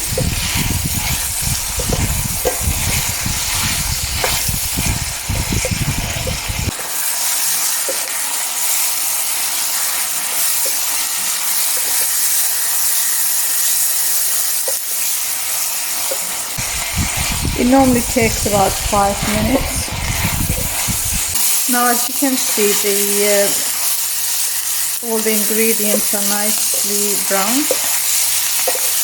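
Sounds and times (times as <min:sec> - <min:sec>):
vegetables sizzling in oil: 0:00.0 - 0:29.0
stirring clicks: 0:00.1 - 0:06.6, 0:25.2 - 0:29.0.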